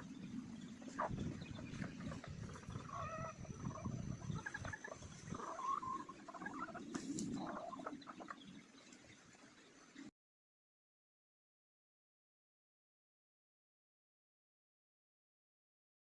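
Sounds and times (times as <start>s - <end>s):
chickens clucking: 0.0s - 10.1s.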